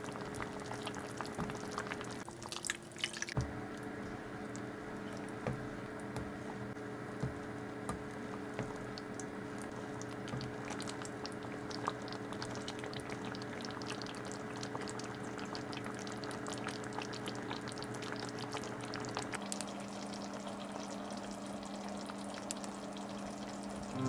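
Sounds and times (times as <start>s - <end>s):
food simmering in frying pan: 0.0s - 24.0s
steady hum: 3.3s - 12.8s.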